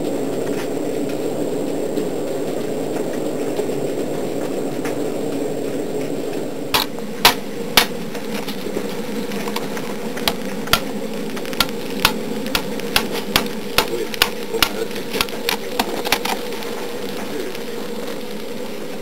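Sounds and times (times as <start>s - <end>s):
low rushing noise: 0.0s - 19.0s
hammer blows on iron: 11.6s - 15.9s.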